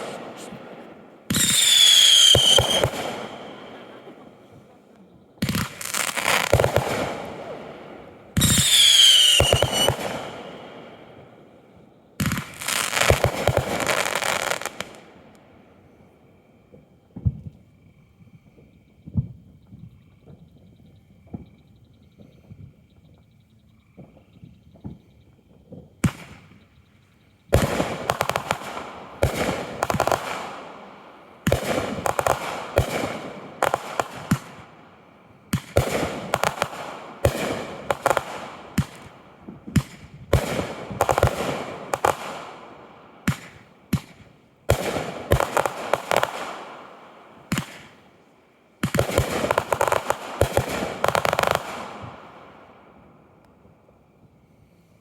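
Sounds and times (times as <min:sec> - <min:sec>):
firework crackling: 0:00.0 - 0:10.8, 0:12.2 - 0:15.1, 0:27.6 - 0:48.0, 0:48.8 - 0:52.5
fireworks bangs: 0:00.0 - 0:11.5, 0:12.2 - 0:15.4, 0:27.5 - 0:48.1, 0:48.8 - 0:53.0.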